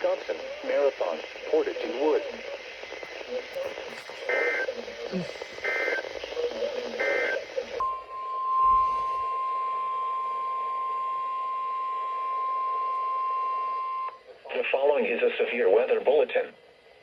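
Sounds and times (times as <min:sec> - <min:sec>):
radio hiss: 0:00.0 - 0:07.8, 0:14.2 - 0:17.0
weather radio alarm tone: 0:03.6 - 0:06.1, 0:07.0 - 0:14.1.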